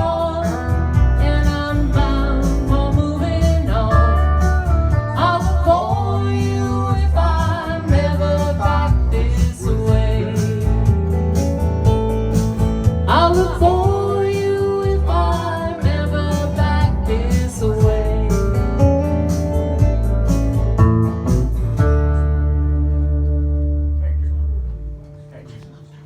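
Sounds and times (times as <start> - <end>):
person singing: 0.0 - 11.0, 13.1 - 18.8
bass line: 0.0 - 25.4
guitar accompaniment: 0.0 - 26.0.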